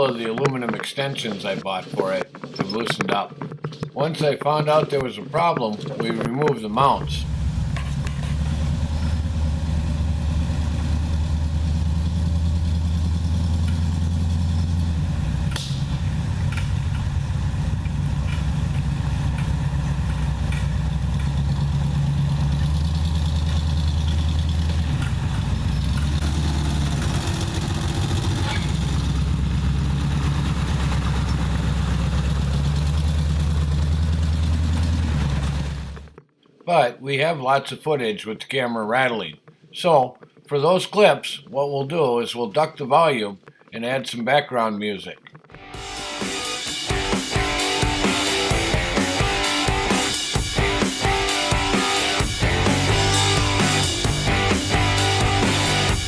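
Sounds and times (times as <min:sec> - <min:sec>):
truck engine running: 0:05.1 - 0:36.2, 0:45.7 - 0:56.0.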